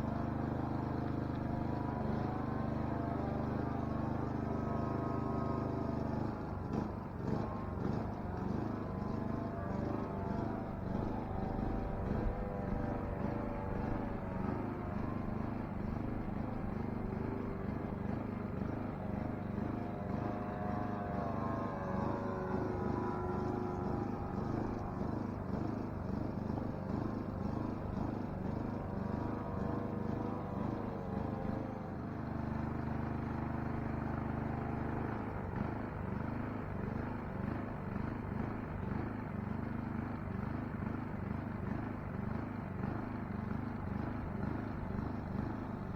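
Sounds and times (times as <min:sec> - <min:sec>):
model airplane engine droning: 0:00.0 - 0:45.9.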